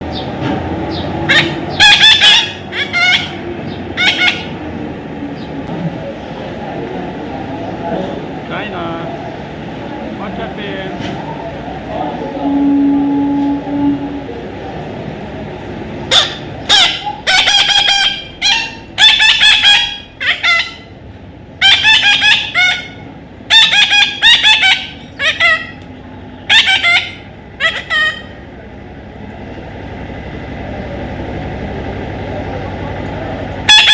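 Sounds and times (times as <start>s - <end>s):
low background rumble: 0.0s - 33.8s
parrot squawking: 1.2s - 4.6s, 16.1s - 21.0s, 21.6s - 25.8s, 26.4s - 28.4s, 33.7s - 33.9s.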